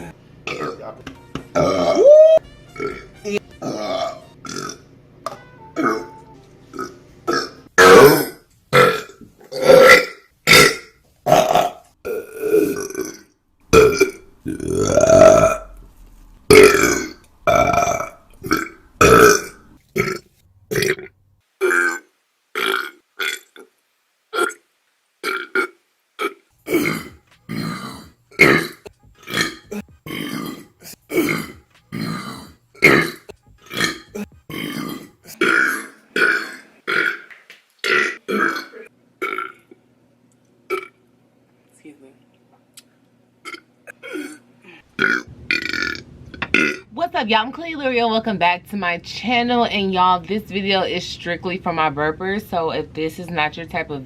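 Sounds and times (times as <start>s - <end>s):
woman burping: 0.0s - 0.8s, 1.6s - 2.1s, 2.8s - 4.8s, 5.8s - 6.1s, 6.8s - 13.2s, 13.8s - 15.7s, 16.5s - 22.0s, 25.2s - 37.2s, 37.8s - 39.8s, 43.4s - 46.8s.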